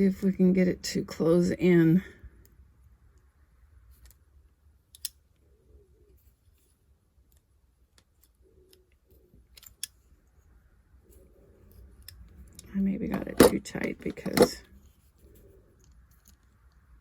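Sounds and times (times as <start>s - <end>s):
pliers clicking on metal: 4.9s - 5.2s.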